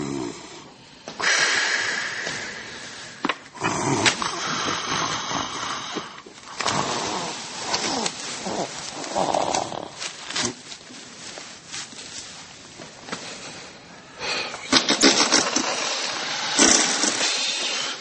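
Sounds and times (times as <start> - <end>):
person snoring loudly: 0.0 - 2.7, 3.6 - 10.0, 15.0 - 18.0.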